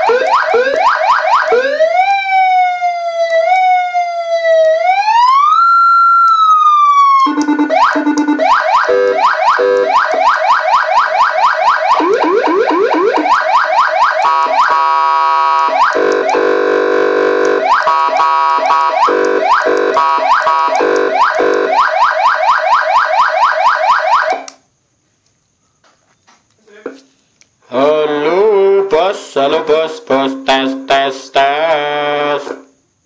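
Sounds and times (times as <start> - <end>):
electronic siren sweeping: 0.0 - 24.5
horn-like siren blast: 0.0 - 24.5.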